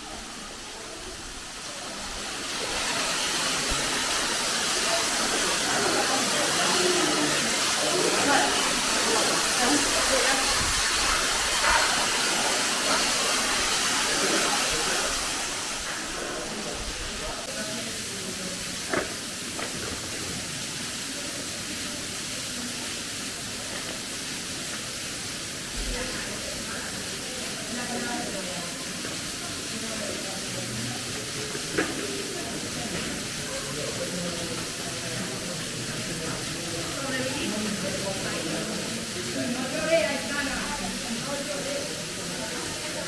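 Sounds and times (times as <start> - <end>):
waterfall pouring: 0.0 - 43.0.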